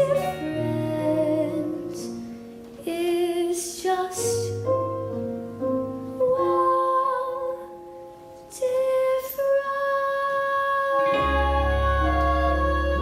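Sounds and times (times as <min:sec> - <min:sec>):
girl singing long held notes: 0:00.0 - 0:02.2, 0:06.2 - 0:13.0
instrumental accompaniment: 0:00.0 - 0:03.4, 0:11.0 - 0:13.0.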